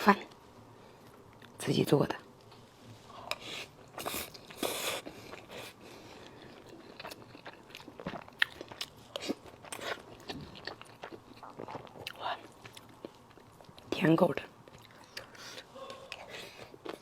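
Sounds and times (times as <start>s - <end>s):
person chewing food: 3.2s - 13.9s, 14.6s - 17.0s
noisy eating bursts: 3.3s - 13.9s.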